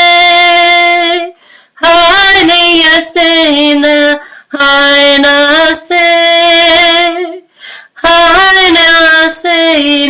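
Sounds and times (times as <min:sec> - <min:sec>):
faint breath: 0:01.4 - 0:01.8, 0:04.2 - 0:04.5, 0:07.5 - 0:08.0
woman chanting: 0:08.0 - 0:10.0.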